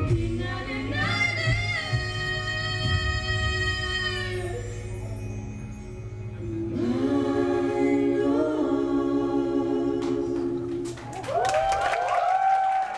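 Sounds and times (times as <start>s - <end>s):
vocal group singing in harmony: 0.0s - 4.4s, 6.4s - 11.2s.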